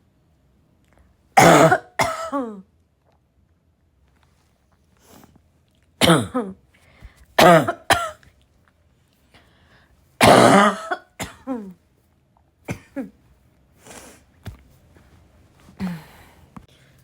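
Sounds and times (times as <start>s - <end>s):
woman coughing hard: 1.4s - 2.6s, 6.0s - 6.6s, 7.4s - 8.2s, 10.2s - 11.8s, 12.7s - 13.2s
faint breath: 6.8s - 7.3s, 9.2s - 10.0s, 15.7s - 17.0s.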